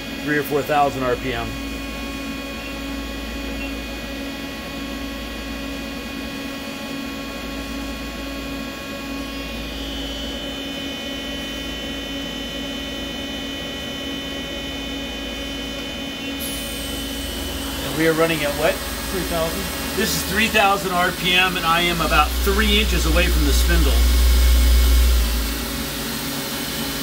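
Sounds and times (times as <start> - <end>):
lathe spindle hum and whine: 0.0 - 27.0.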